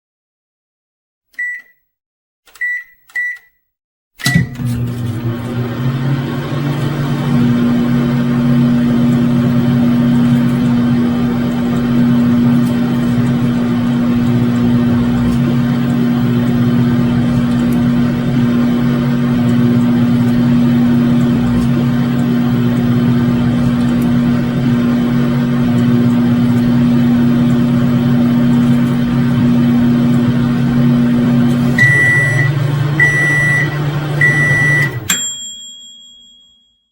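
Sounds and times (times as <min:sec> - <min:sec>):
microwave fan running: 0:04.2 - 0:35.5
microwave oven humming: 0:04.2 - 0:36.0
short high-pitched beeps: 0:31.8 - 0:35.0.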